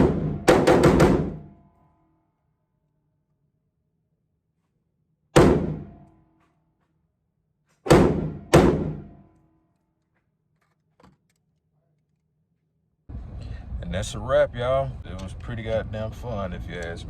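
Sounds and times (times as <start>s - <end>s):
handgun shots with echo: 5.4s - 6.1s, 7.9s - 9.3s.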